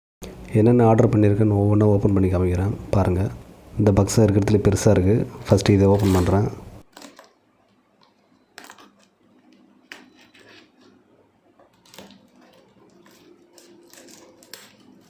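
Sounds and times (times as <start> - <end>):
cardboard scraping and rustling: 5.8 - 6.6.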